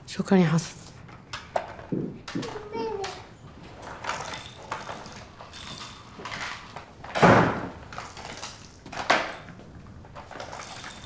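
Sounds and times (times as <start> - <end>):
door shutting with heavy thud: 7.1 - 7.8.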